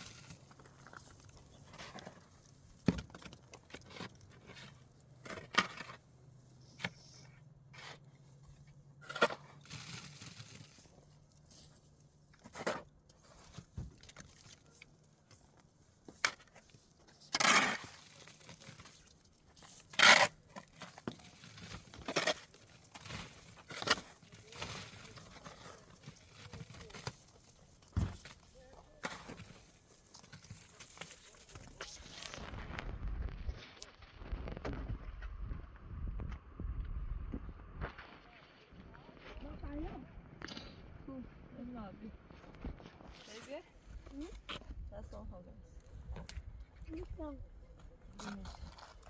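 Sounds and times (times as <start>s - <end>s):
hand tool scrapes: 19.6s - 27.1s.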